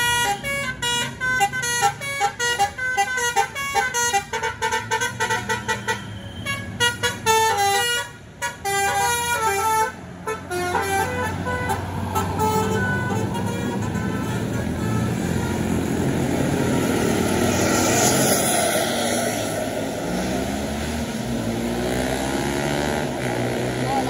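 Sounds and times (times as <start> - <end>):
bus musical horn melody: 0.0 - 18.4
bus engine hum: 0.0 - 24.0.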